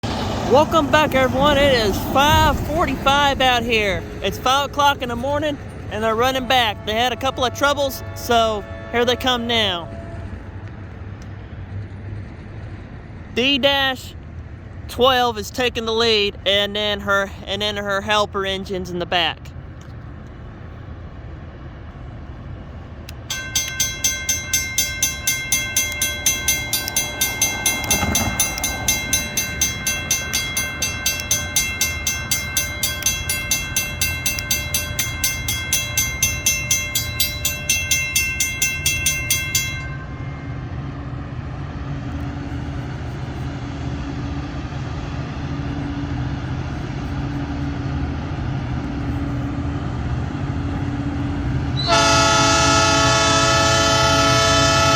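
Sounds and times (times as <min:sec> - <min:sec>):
diesel locomotive engines rumbling: 0:00.0 - 0:54.9
bell ringing: 0:23.3 - 0:40.8.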